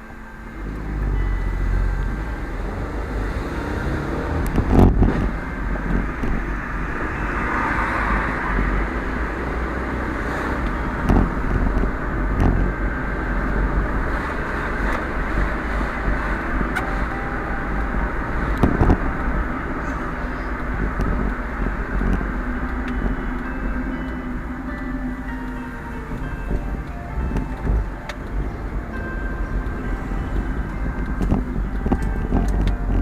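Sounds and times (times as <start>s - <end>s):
low rumble of car driving: 0.0s - 33.0s.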